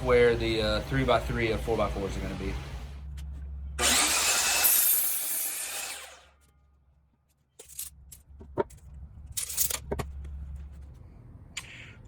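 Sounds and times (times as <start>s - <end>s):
power saw cutting wood: 3.8s - 6.4s.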